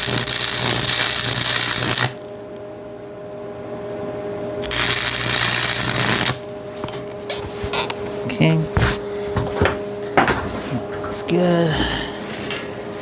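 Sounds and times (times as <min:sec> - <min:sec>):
welding arc crackling: 0:00.0 - 0:02.4, 0:04.6 - 0:07.9
welder humming: 0:00.0 - 0:13.0.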